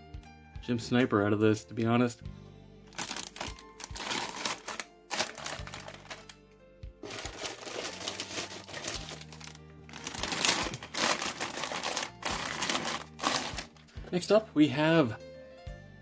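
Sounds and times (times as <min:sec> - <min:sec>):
background music with bass: 0:00.0 - 0:16.0
plastic bags crinkling: 0:03.0 - 0:06.4, 0:07.0 - 0:13.8.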